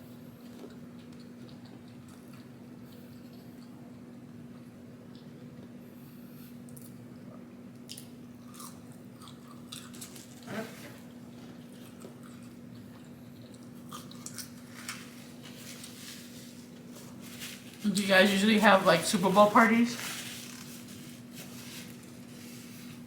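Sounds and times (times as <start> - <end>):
faint steady hum: 0.0 - 23.0
person chewing and biting food: 0.3 - 5.6, 7.8 - 10.5, 11.1 - 15.5.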